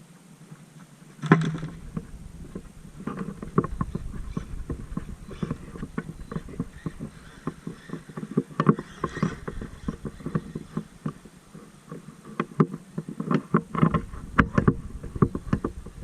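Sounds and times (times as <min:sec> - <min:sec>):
rc truck clattering: 0:01.2 - 0:11.3.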